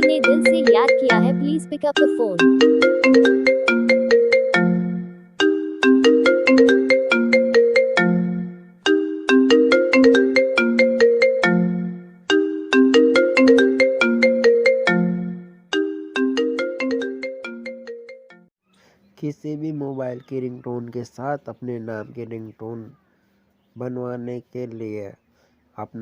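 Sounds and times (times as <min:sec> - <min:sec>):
phone ringtone melody: 0:00.0 - 0:18.5.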